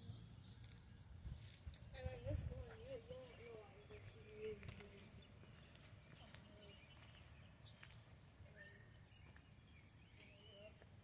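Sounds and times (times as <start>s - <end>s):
faint bird chirps: 2.8s - 11.0s.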